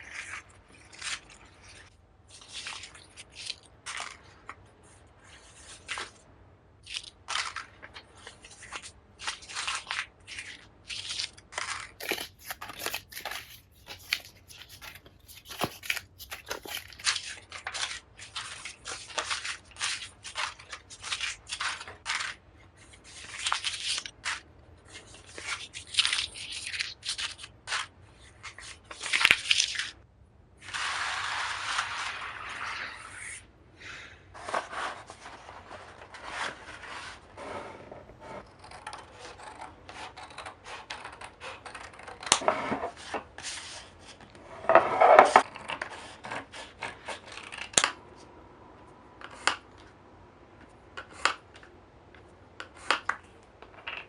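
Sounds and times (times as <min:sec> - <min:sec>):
scratching and crunching strokes: 0:06.9 - 0:30.0
long continuous scrape: 0:30.6 - 0:47.2.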